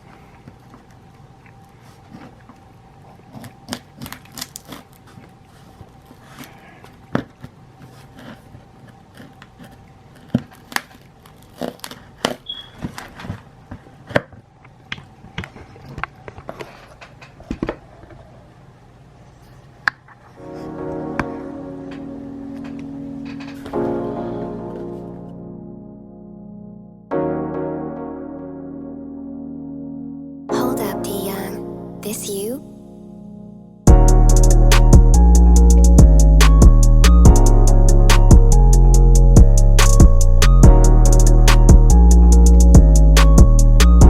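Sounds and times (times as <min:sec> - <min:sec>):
music: 0:20.4 - 0:44.0.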